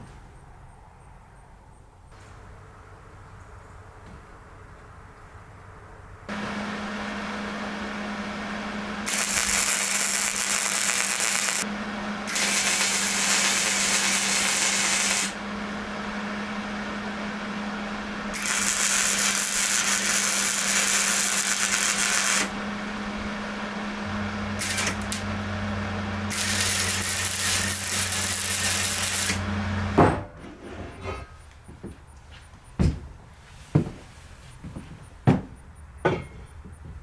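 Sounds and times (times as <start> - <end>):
steady low hum: 2.1 - 33.3
power tool running: 6.3 - 30.1.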